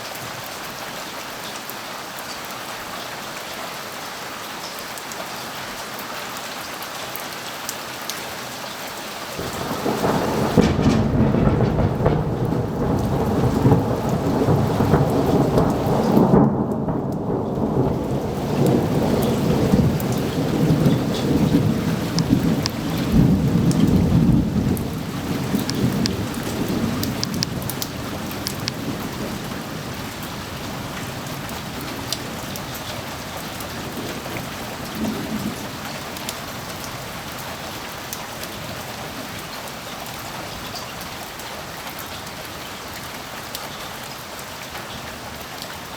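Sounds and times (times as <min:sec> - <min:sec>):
steady rain: 0:00.0 - 0:45.9
thunder rumbling: 0:09.4 - 0:36.2
drops ticking close by: 0:21.5 - 0:23.9, 0:25.4 - 0:28.8.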